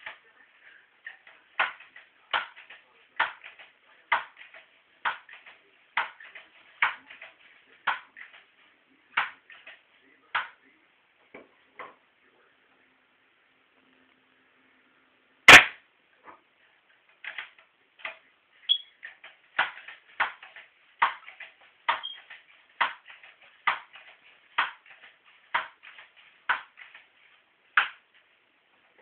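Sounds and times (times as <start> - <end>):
air rifle shot crack: 15.5 - 15.8.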